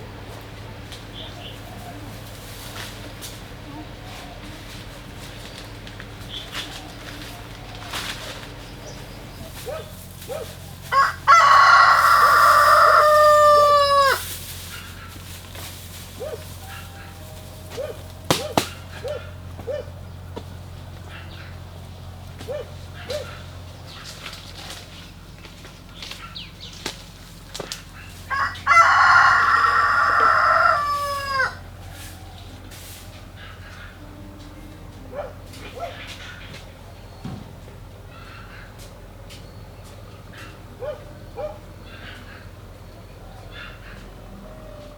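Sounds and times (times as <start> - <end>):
rooster crowing: 10.8 - 14.4, 28.2 - 34.2
soft short rooster calls: 10.9 - 14.3, 28.3 - 32.4.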